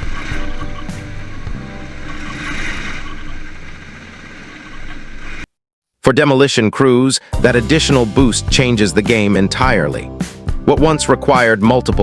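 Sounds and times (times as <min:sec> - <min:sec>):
music with steady beat: 0:00.0 - 0:01.9, 0:07.4 - 0:12.0
heavy machinery rumbling: 0:00.0 - 0:05.4.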